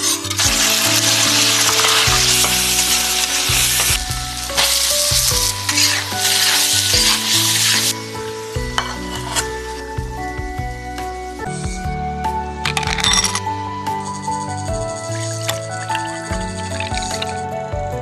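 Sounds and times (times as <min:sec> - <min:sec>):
fish frying in hot oil: 0:00.0 - 0:09.8
background music: 0:00.0 - 0:18.0.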